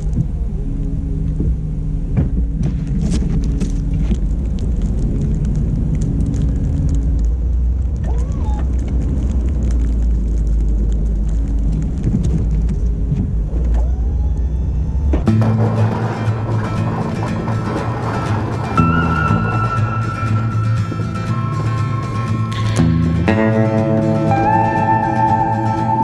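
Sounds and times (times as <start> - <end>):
pickup truck engine rumble: 15.2 - 26.0.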